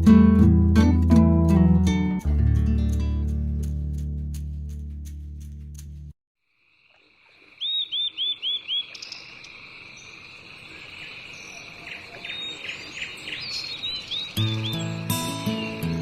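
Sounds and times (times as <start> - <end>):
insect drone: 6.4 - 11.9
birds chirping: 7.1 - 16.0.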